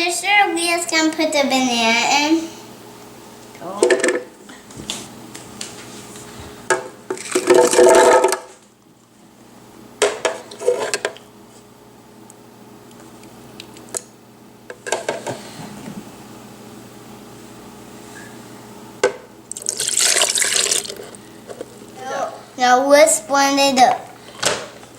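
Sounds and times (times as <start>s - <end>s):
dishes and blender jar clattering: 6.7s - 8.5s.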